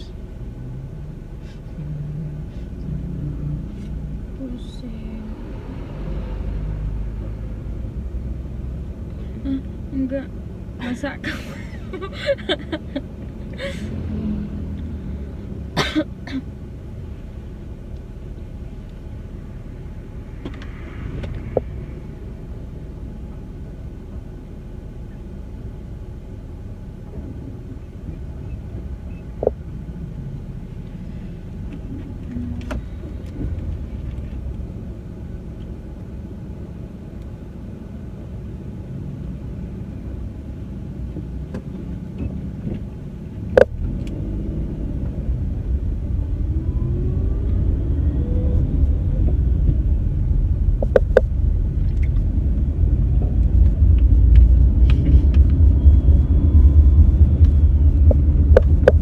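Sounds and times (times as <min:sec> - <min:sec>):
vehicle rumble: 0:00.0 - 0:59.0
sharp clicks or knocks: 0:50.8 - 0:51.3.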